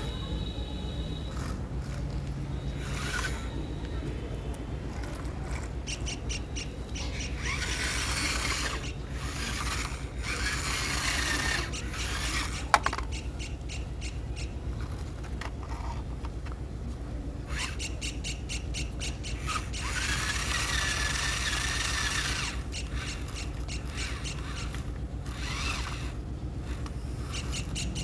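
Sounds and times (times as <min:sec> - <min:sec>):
fast ticking: 0:00.0 - 0:15.4, 0:17.5 - 0:28.0
steady low hum: 0:00.0 - 0:28.0.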